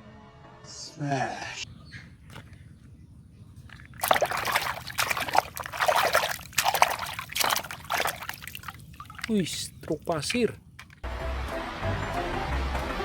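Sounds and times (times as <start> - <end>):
water splashing and trickling: 3.5 - 13.0.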